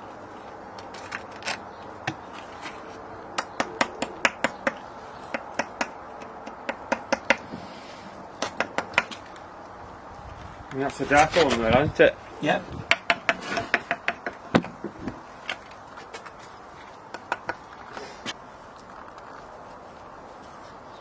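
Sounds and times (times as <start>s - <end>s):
trowel tapping on brick: 3.4s - 7.4s, 12.8s - 14.8s.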